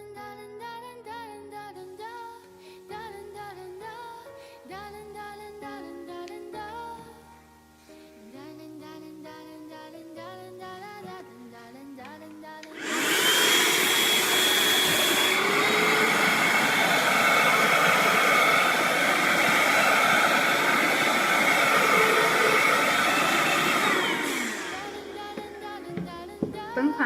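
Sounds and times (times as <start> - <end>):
soft background music: 0.0 - 12.8, 24.6 - 27.0
vacuum cleaner motor whining: 12.7 - 26.6.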